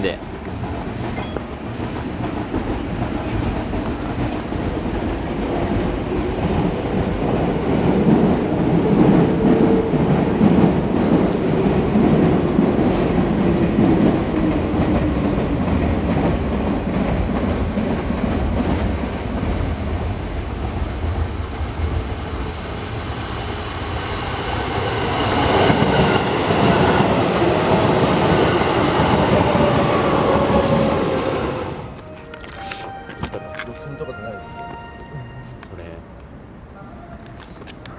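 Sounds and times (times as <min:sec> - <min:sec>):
train wheels clicking over rail joints: 0:00.2 - 0:19.7.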